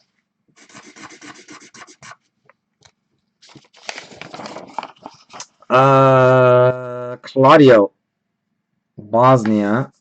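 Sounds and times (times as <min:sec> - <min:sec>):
scratching and rubbing on a surface: 0:00.6 - 0:02.3.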